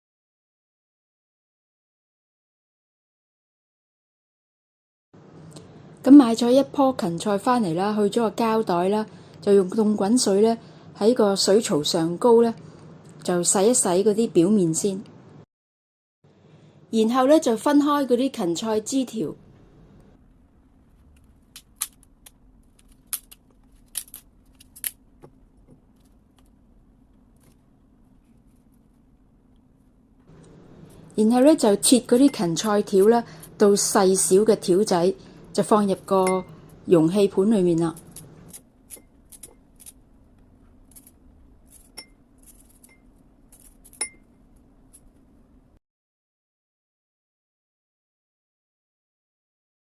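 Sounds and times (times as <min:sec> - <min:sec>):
faint steady hum: 0:05.2 - 0:15.5, 0:16.3 - 0:45.8.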